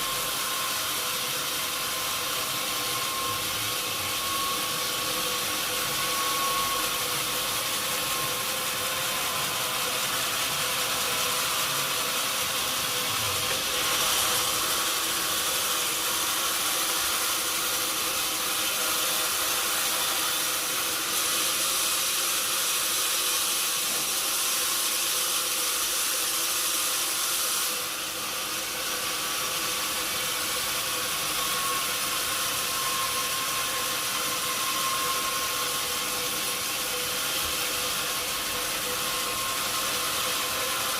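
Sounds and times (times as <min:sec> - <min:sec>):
saw cutting through log: 0:00.0 - 0:40.9.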